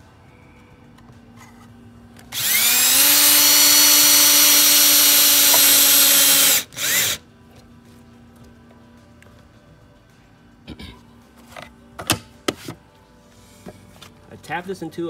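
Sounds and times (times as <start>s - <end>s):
power drill spinning: 2.3s - 7.2s.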